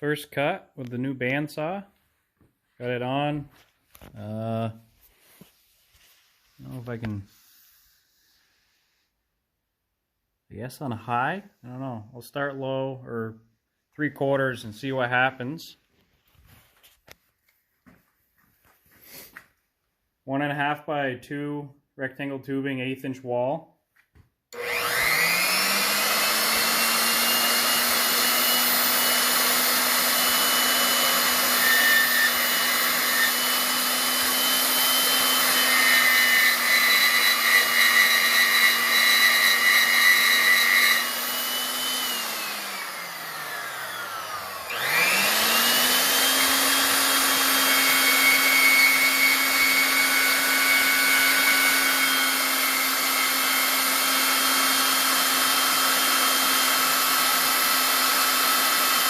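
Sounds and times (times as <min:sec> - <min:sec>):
motor whine: 0:24.6 - 0:36.0, 0:37.0 - 0:53.0
bandsaw cutting metal tubing: 0:24.6 - 0:59.0.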